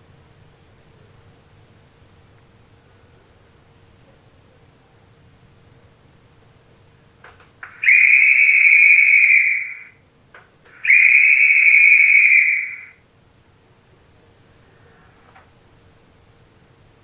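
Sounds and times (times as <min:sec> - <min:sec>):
high-pitched whistle blasts: 0:07.6 - 0:10.0, 0:10.8 - 0:13.0.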